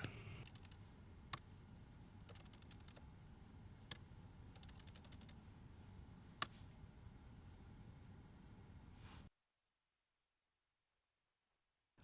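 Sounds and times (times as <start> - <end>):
typing on laptop keyboard: 0.4 - 0.8, 2.2 - 3.0, 4.5 - 5.4.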